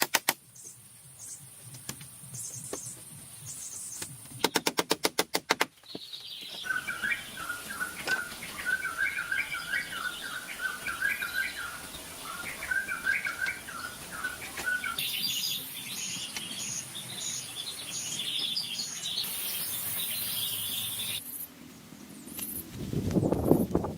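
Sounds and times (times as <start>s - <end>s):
birds chirping: 5.8s - 22.6s
steady high hiss: 6.5s - 23.9s.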